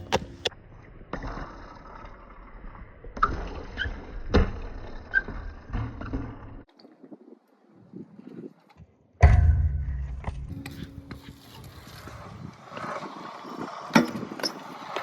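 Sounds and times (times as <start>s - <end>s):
loud thump: 9.2s - 11.2s.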